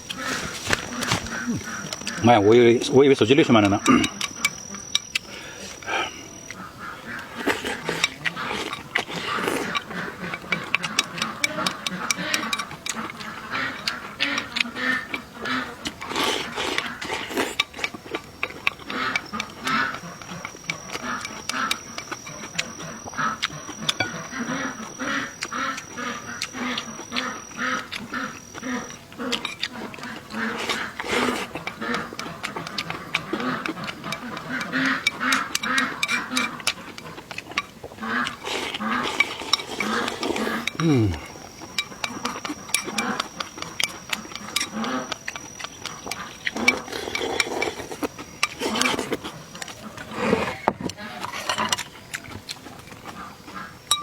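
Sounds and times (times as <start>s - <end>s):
person chewing and lip-smacking: 0.0s - 54.0s
sharp mouth clicks: 3.6s - 15.2s, 15.8s - 49.8s
high-pitched whine: 38.4s - 49.6s.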